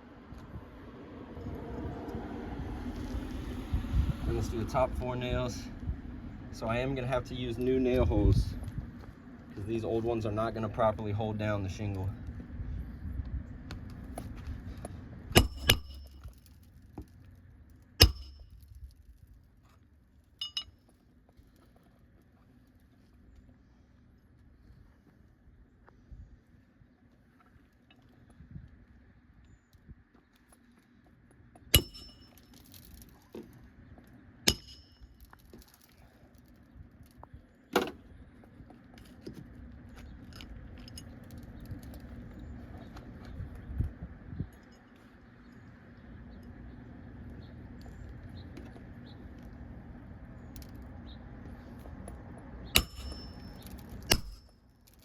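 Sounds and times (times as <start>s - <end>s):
hammer striking metal nails: 15.4s - 16.3s, 18.0s - 18.6s, 31.7s - 32.4s, 34.5s - 35.2s, 52.8s - 54.5s.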